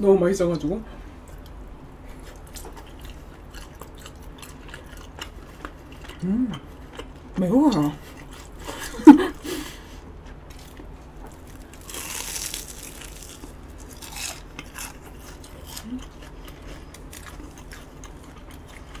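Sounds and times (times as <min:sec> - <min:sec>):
hum-like vocal sound: 0:06.1 - 0:06.8, 0:15.7 - 0:16.2.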